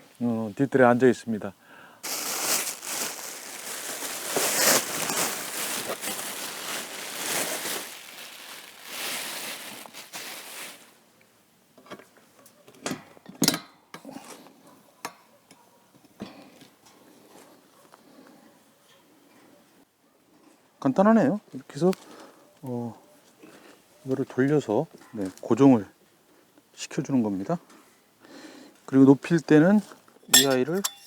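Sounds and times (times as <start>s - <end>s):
rustling and handling noise: 2.0s - 11.0s.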